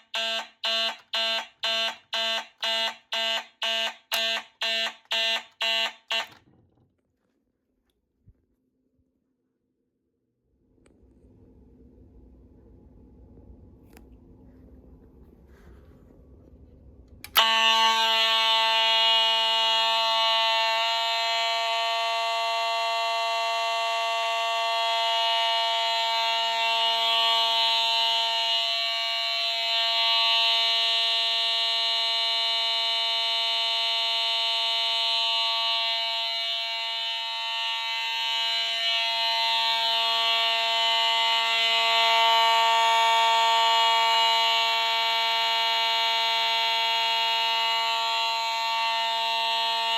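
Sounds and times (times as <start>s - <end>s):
fire alarm buzzy horn tone: 0.0s - 6.6s, 17.1s - 49.9s.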